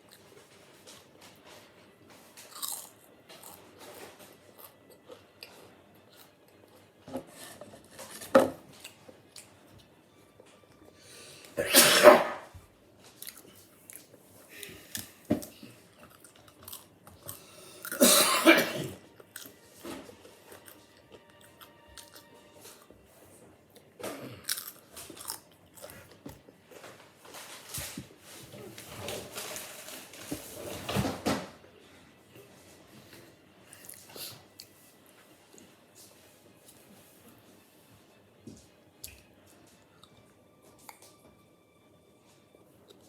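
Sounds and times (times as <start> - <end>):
crunching potato chips: 2.3 - 6.4, 15.9 - 18.0, 24.3 - 26.2.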